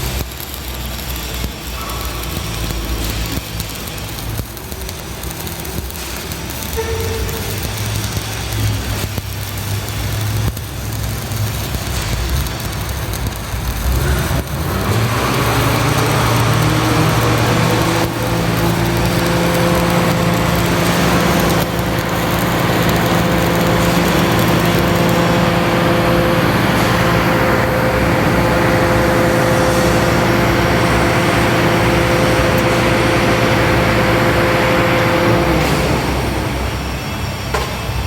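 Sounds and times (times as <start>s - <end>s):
welding arc crackling and hissing: 0.0s - 38.0s.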